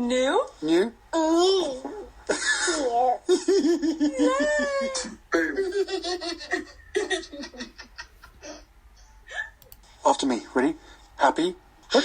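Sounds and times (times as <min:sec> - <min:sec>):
high-pitched giggling laughter: 0:02.3 - 0:08.7.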